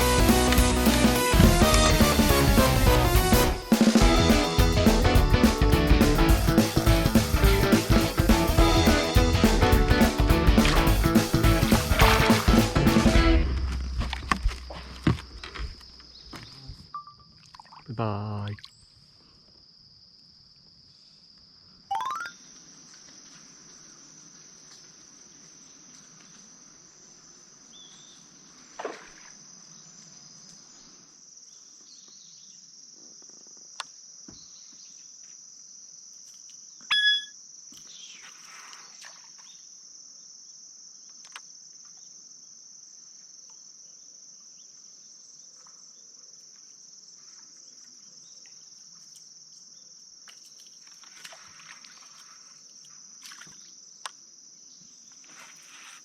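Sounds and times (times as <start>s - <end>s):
insect chorus chirring: 13.3s - 56.0s.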